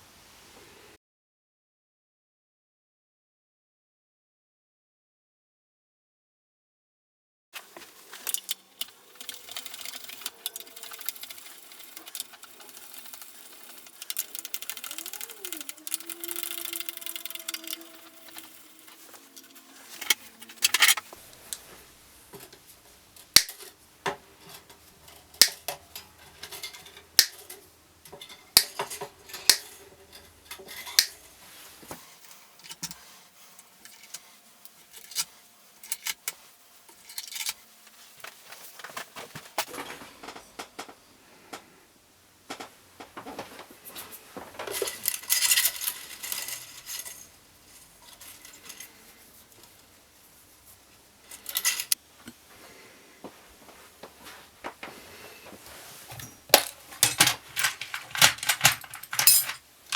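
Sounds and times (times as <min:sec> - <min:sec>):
small metal parts clinking: 0:07.6 - 0:21.7, 0:22.3 - 0:38.0, 0:44.6 - 0:49.9, 0:51.2 - 0:52.0, 0:56.1 - 0:59.9.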